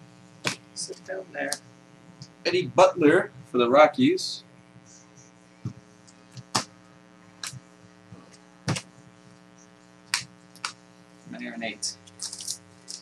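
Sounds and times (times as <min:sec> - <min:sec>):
electrical hum: 0:00.0 - 0:13.0
cards snapping and tapping: 0:10.1 - 0:10.8.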